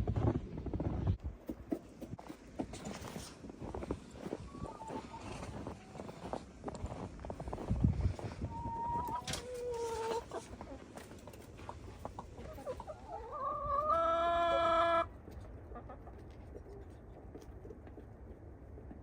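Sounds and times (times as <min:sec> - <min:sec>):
chickens calling: 0:04.2 - 0:06.3, 0:08.4 - 0:15.1.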